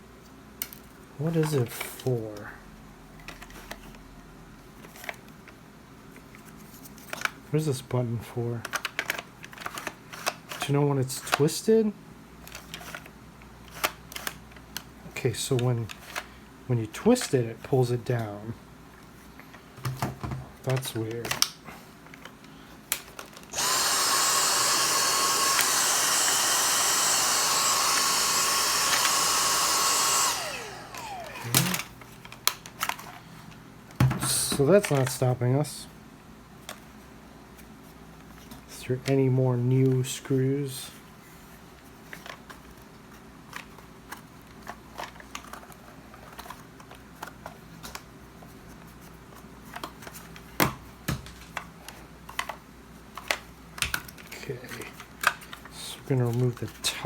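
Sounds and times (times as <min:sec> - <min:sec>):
electric motor whining: 0:23.5 - 0:31.9.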